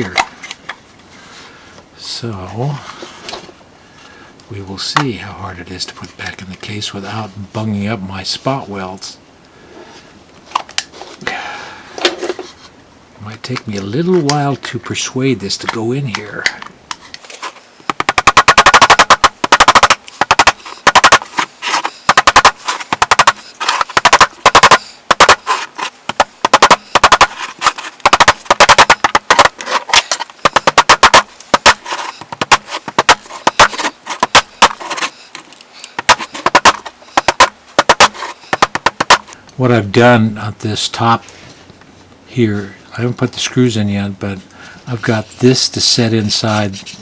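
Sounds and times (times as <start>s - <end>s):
plastic case clicking and clattering: 16.4s - 39.4s.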